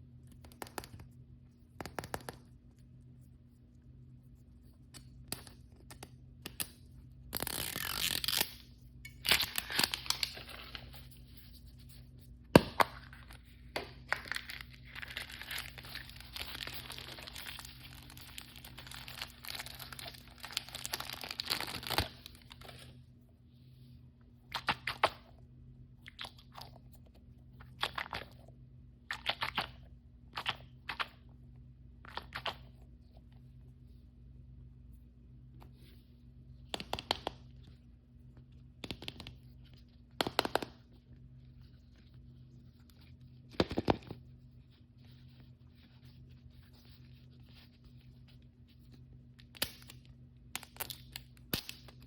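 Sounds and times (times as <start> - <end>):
plastic packaging tearing: 7.3 - 8.6, 14.2 - 22.6
packaging crinkling: 14.1 - 22.7.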